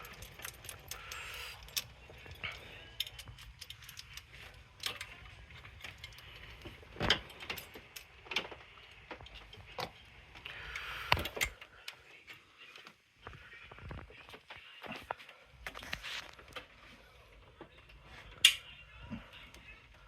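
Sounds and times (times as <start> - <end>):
metallic clicks and clinks: 0.0 - 10.1.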